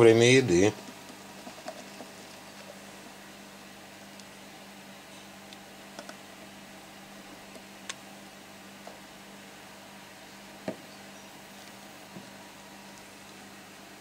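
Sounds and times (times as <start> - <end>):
quiet low hum: 0.0 - 14.0
faint clicks and taps: 0.8 - 2.8, 5.5 - 6.2.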